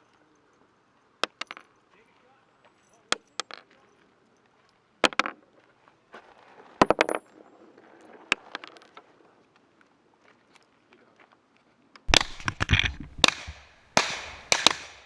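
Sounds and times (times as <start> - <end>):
gunshots with short echo: 12.1 - 15.0.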